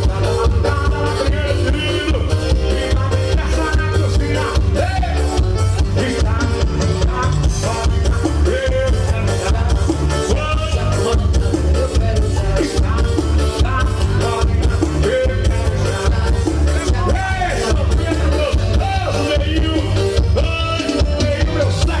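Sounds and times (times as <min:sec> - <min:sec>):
band playing upbeat music: 0:00.0 - 0:22.0
person singing: 0:00.0 - 0:22.0.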